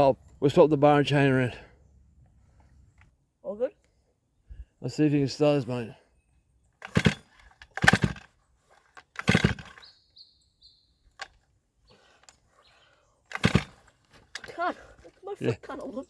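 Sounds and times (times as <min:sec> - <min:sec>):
chainsaw starter cord yanks: 0:06.8 - 0:10.0, 0:11.1 - 0:16.0.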